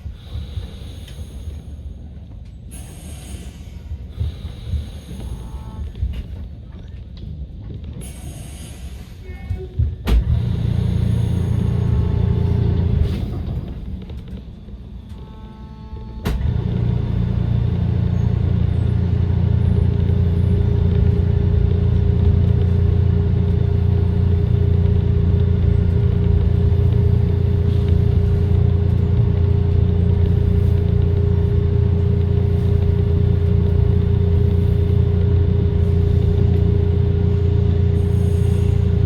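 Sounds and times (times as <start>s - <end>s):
trolley car rumble and whine: 0.0s - 39.0s
trolley car clunk: 9.3s - 15.4s, 16.2s - 39.0s.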